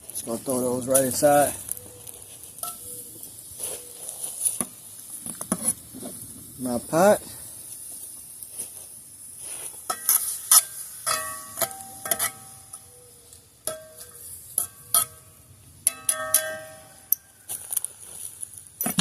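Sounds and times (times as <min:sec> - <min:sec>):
faint high hiss: 0:00.1 - 0:19.0
utensil scraping metal pot: 0:09.9 - 0:12.9.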